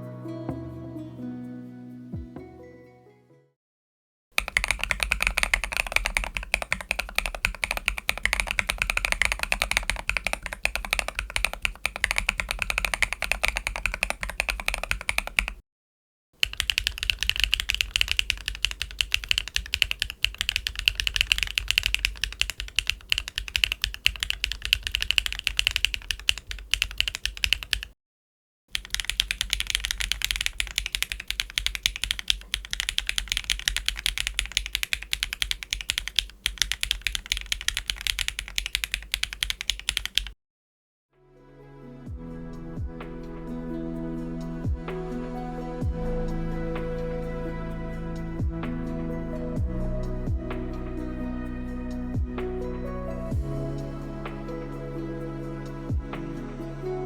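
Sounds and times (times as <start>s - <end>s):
mechanical keyboard typing: 4.4s - 15.6s, 16.4s - 27.9s, 28.7s - 40.4s.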